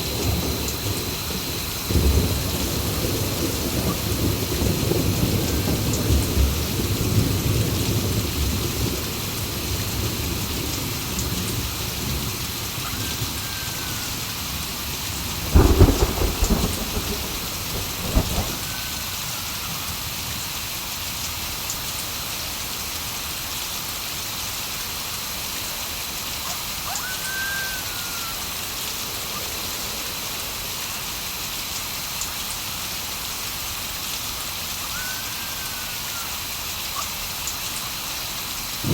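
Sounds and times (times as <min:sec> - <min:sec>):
sharp thunderclap: 0:00.0 - 0:12.4, 0:14.8 - 0:19.2
thunder rumble: 0:00.0 - 0:20.5, 0:26.9 - 0:32.5
heavy rain: 0:00.0 - 0:38.9.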